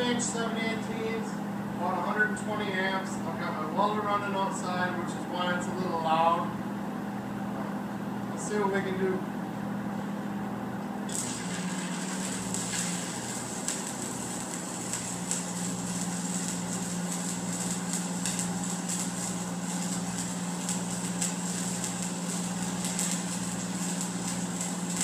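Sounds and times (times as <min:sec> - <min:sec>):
welding arc crackling: 0:11.1 - 0:25.0
welding machine humming: 0:11.1 - 0:25.0.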